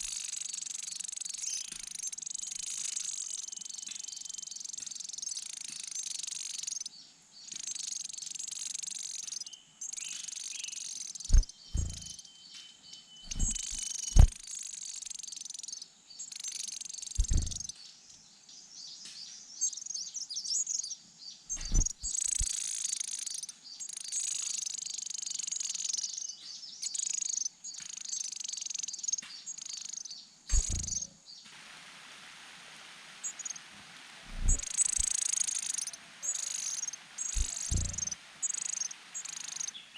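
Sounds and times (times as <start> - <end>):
nestlings chirping: 11.2 - 12.2, 13.3 - 14.4, 17.2 - 17.7, 21.5 - 22.6, 30.5 - 31.1, 34.3 - 36.0, 36.6 - 38.9
dull low thumps: 11.3 - 12.1, 13.3 - 14.4, 17.2 - 17.7, 21.6 - 22.1, 30.5 - 31.1, 34.3 - 35.1, 37.4 - 38.2.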